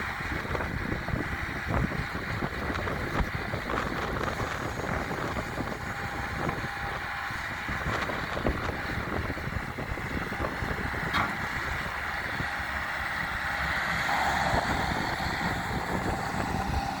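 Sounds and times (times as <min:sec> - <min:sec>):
loader engine running: 0:00.0 - 0:17.0
wind on microphone: 0:00.0 - 0:17.0.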